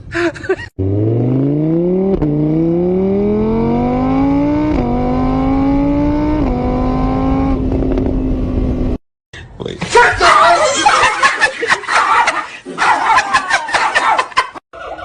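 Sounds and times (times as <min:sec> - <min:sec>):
vehicle engine accelerating: 0:00.8 - 0:09.0.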